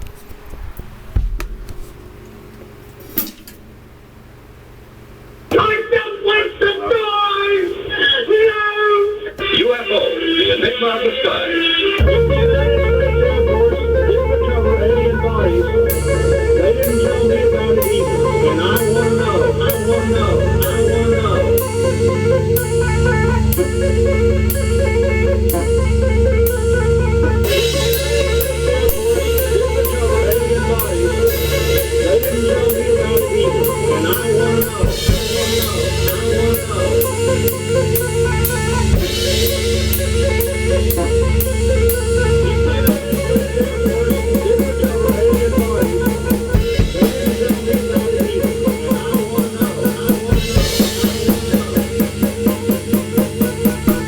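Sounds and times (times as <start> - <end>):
backing track with guitar: 11.9 - 54.0
drum kit playing: 11.9 - 54.0.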